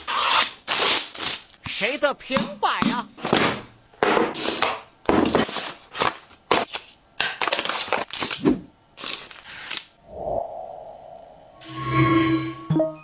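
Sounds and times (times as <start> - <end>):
plastic packaging clicks and rustles: 5.1 - 8.4
short ringing tone: 11.6 - 13.0.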